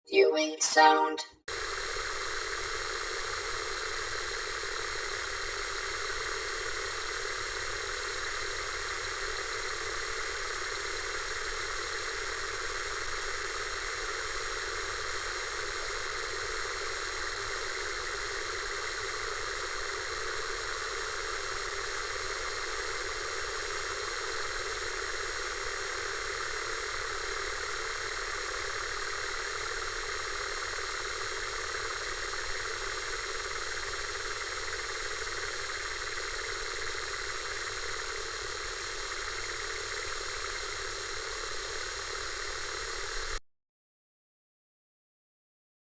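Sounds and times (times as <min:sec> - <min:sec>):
faint steady tones: 0:01.4 - 0:43.4
television static hiss: 0:01.4 - 0:43.4.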